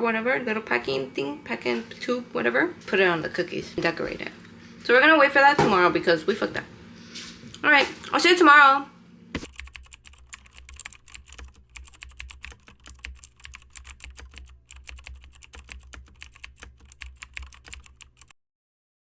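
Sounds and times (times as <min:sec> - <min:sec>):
keyboard typing: 0:09.4 - 0:18.3.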